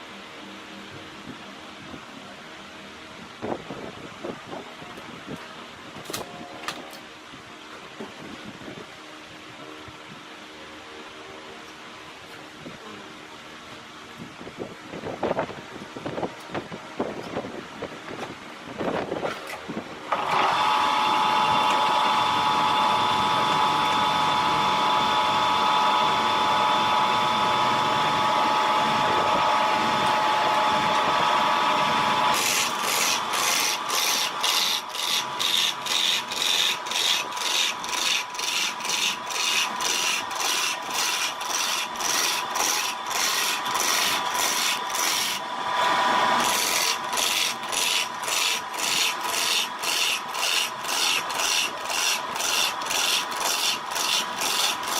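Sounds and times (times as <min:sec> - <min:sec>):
machine whine with scraping hiss: 0:20.1 - 0:54.9
rasping strokes on wood: 0:28.9 - 0:45.4, 0:46.3 - 0:54.9.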